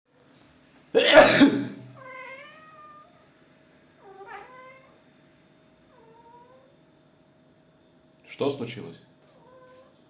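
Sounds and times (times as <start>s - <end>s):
person sneezing: 1.0s - 1.8s
cat meowing: 2.0s - 3.2s, 4.0s - 5.0s, 5.9s - 6.7s, 9.3s - 10.0s.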